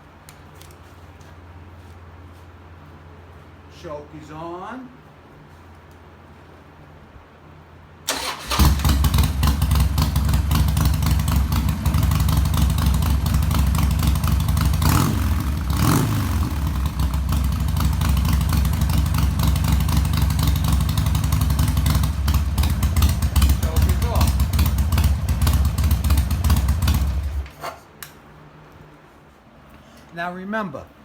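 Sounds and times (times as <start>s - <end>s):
motorcycle engine revving: 8.1s - 27.5s
motorcycle engine starting and running: 8.1s - 27.5s.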